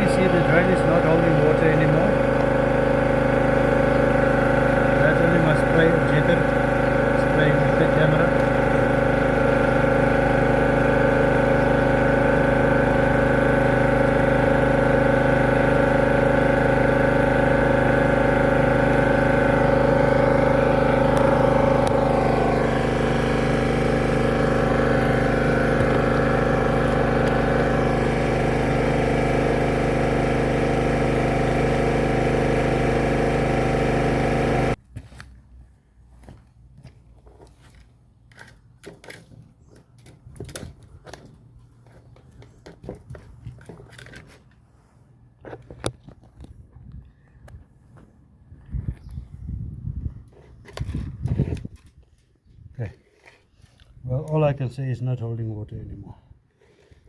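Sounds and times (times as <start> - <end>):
drain jetter motor and pump: 0.0 - 34.8, 37.5 - 46.5, 53.0 - 55.8.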